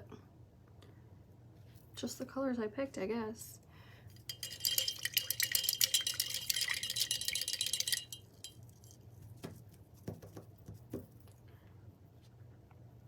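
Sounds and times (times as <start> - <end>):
clinking and rattling against glass: 4.2 - 9.0.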